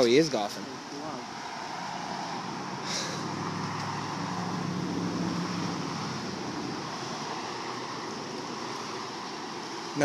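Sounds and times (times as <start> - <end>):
rushing noise: 1.1 - 10.0
golf cart motor hum: 2.4 - 10.0.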